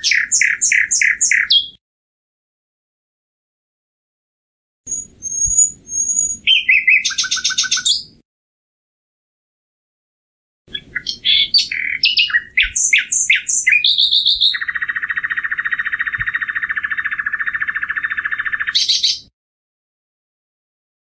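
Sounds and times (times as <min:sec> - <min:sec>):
nightingale singing: 0:00.0 - 0:01.8, 0:04.9 - 0:08.2, 0:10.7 - 0:19.3.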